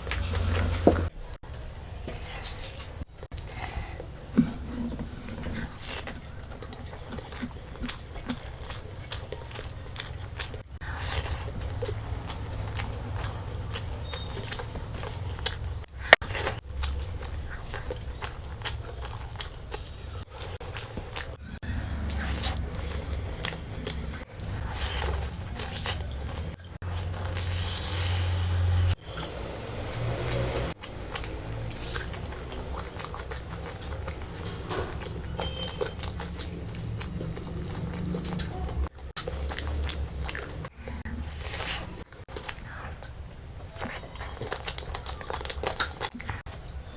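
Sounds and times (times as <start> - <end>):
close chewing and biting: 0.0 - 46.9
wet mouth clicks: 29.9 - 46.4.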